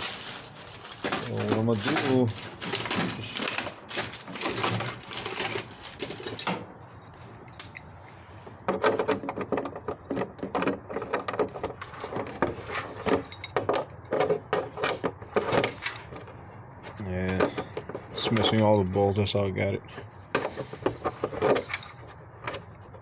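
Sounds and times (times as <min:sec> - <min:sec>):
plastic and metal parts rattling: 0:00.0 - 0:07.8, 0:08.6 - 0:23.0.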